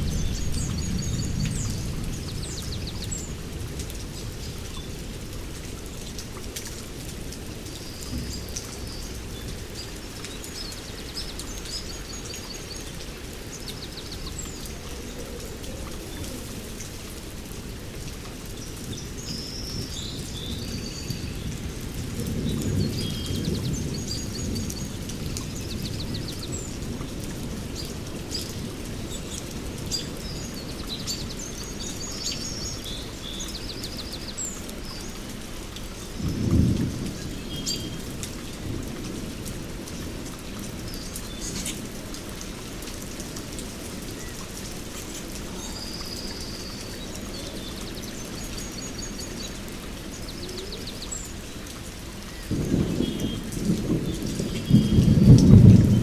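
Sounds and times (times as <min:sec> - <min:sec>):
thunder rolling: 0:00.0 - 0:03.8, 0:52.5 - 0:56.0
steady rain: 0:00.0 - 0:56.0.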